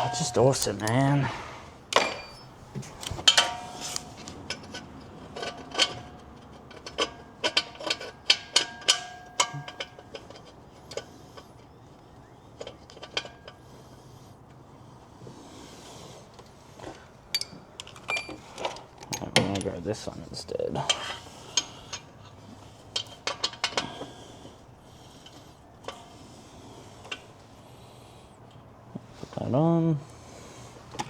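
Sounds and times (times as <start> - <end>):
metal hand tools clinking: 0.0 - 1.0.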